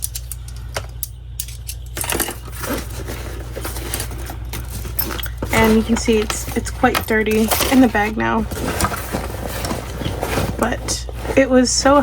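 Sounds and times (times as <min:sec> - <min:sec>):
metal carabiner clicking: 0:00.0 - 0:02.5
fabric rustling: 0:02.0 - 0:12.0.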